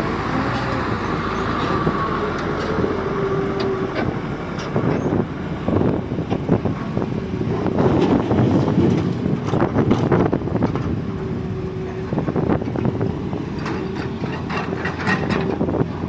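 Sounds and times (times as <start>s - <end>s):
excavator diesel engine: 0.0s - 16.0s
knocks and clatter: 13.5s - 15.7s.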